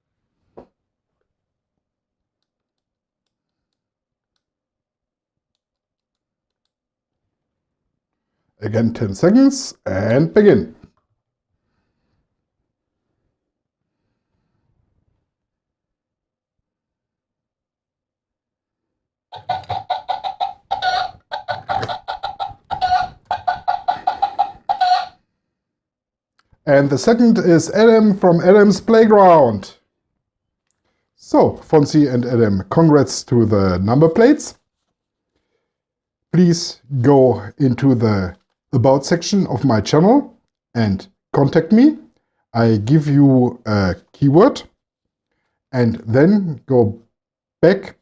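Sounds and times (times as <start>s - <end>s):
recorded hen cackling: 19.3s - 25.2s.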